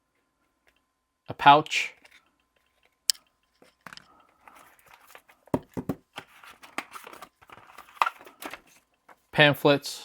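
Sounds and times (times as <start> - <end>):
paper and plastic rustling: 4.4 - 5.5, 6.1 - 9.3
taps and knocks on box: 5.5 - 6.1.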